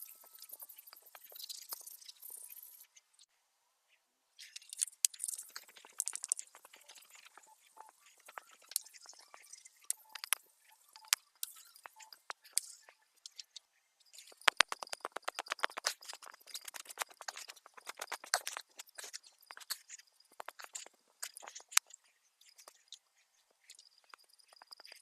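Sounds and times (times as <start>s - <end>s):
clicks and scrapes on wood: 14.2s - 25.0s.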